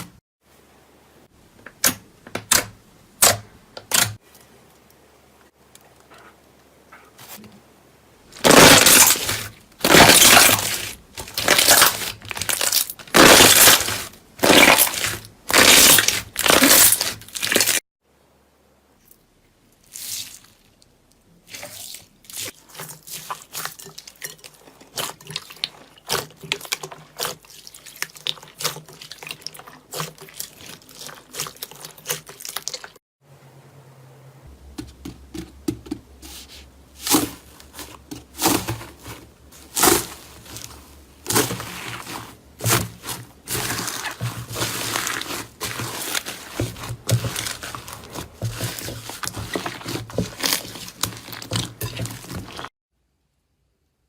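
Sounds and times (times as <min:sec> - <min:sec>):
slime crackling and popping: 0:08.4 - 0:17.8
slime strokes by hand: 0:36.2 - 0:52.7.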